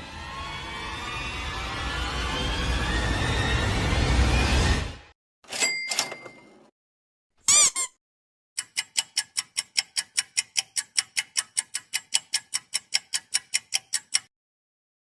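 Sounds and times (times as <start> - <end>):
clock ticking fast: 8.6 - 14.3.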